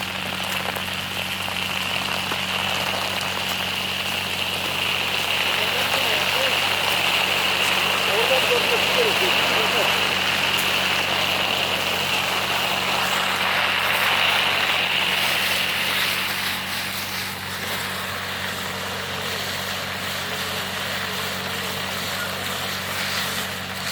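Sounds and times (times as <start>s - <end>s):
engine drone: 0.0s - 23.9s
high machine whine: 0.0s - 23.9s.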